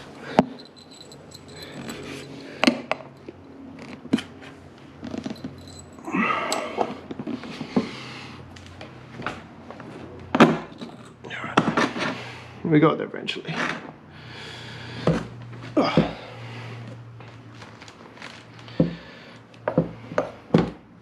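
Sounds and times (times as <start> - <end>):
hand tools clicking on metal: 0.4 - 3.5
rough rasping: 0.6 - 2.5.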